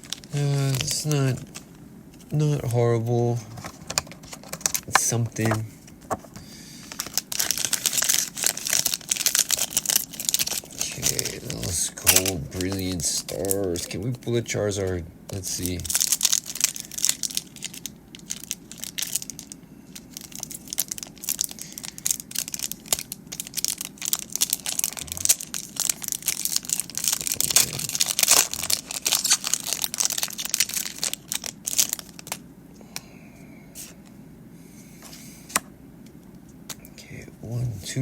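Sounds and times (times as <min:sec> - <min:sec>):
foil wrapper tearing and crinkling: 0:00.0 - 0:01.6, 0:06.8 - 0:14.7, 0:15.3 - 0:32.4.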